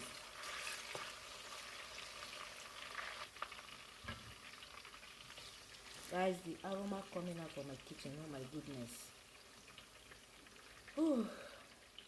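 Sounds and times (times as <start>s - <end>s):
onion sizzling in oil: 0.0s - 12.0s.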